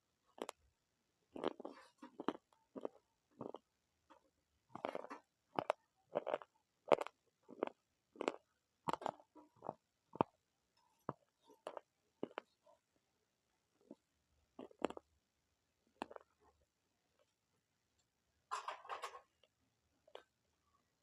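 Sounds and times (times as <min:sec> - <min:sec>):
chewing crunchy food: 0:00.3 - 0:00.6, 0:01.4 - 0:03.7, 0:04.8 - 0:10.4, 0:11.0 - 0:12.6, 0:14.6 - 0:15.0, 0:16.0 - 0:16.4.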